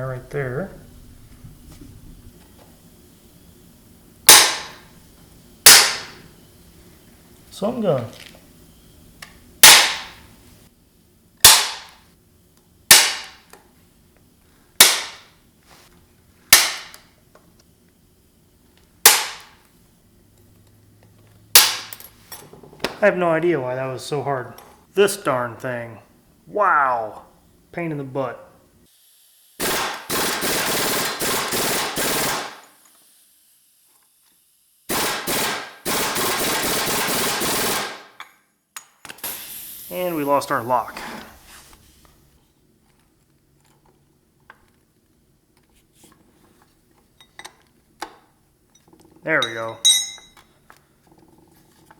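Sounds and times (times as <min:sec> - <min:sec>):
impact wrench rattling bursts: 0:29.6 - 0:32.7.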